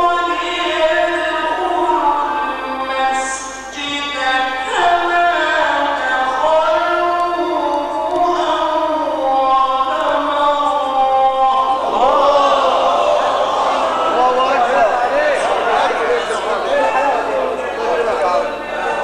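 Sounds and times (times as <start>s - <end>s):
man chanting: 0.0s - 12.6s
listeners' voices: 0.0s - 19.0s.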